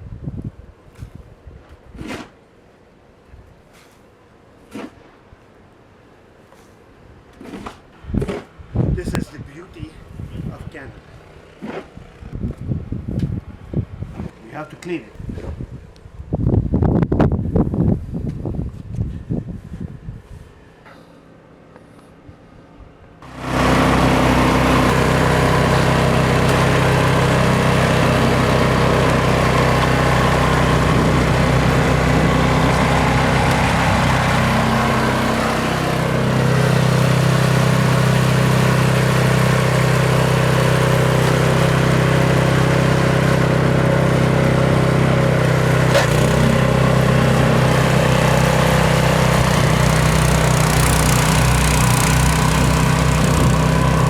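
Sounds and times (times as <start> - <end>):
small petrol engine running: 23.2 - 54.0.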